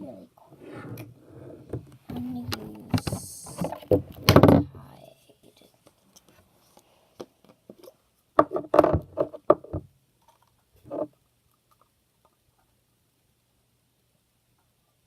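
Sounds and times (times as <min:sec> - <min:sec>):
plastic knocks and clatter: 0:01.7 - 0:04.7, 0:08.4 - 0:09.9.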